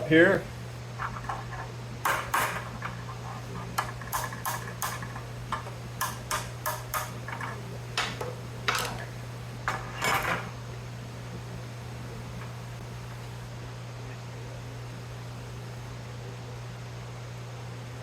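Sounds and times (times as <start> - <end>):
metal parts clanking on workbench: 7.3 - 9.1, 9.7 - 10.5.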